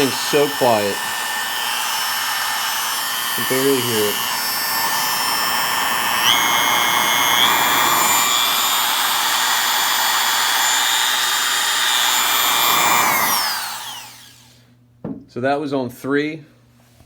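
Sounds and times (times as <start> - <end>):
router motor whining: 0.0 - 14.6.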